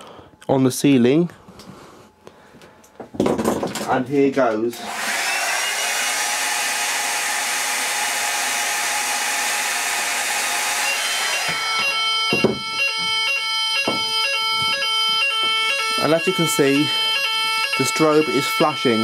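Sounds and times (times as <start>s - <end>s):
hot-air blower hissing: 4.7s - 11.9s
two-tone fire alarm: 10.8s - 19.0s.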